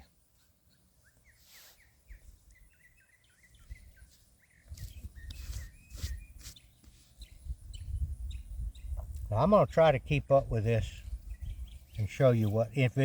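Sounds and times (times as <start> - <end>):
small birds chirping: 0.0 - 13.0
scraping rustles: 4.0 - 7.2.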